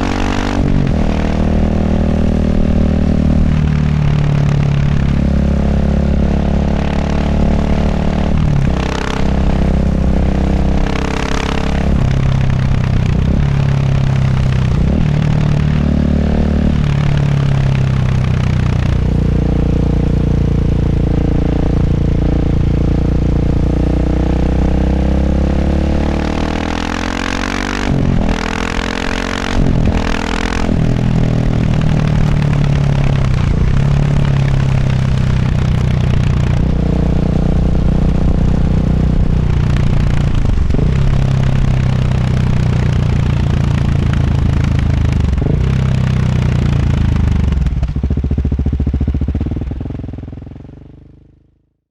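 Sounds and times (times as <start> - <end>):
motorcycle engine revving: 0.0 - 51.4
exhaust cracks: 27.3 - 49.6.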